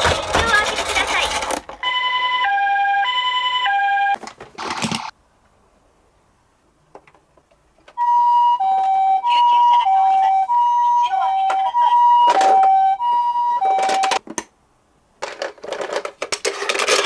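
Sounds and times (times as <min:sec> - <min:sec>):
toy electronic two-tone siren: 0:01.8 - 0:04.2, 0:08.0 - 0:14.2.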